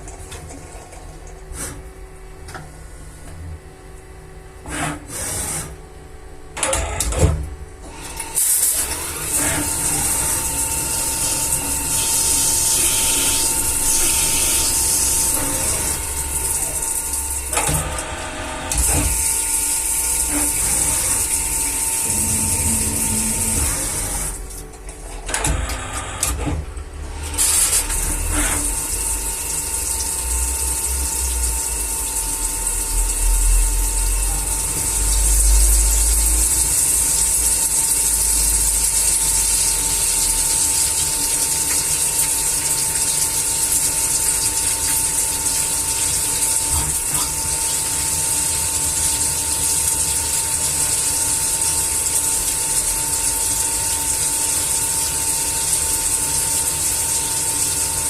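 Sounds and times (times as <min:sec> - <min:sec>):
machine motors whining: 0:06.6 - 0:28.8.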